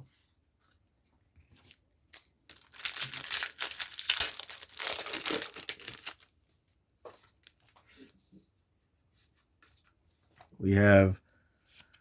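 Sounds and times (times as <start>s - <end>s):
foil wrapper tearing and crinkling: 2.5s - 6.3s.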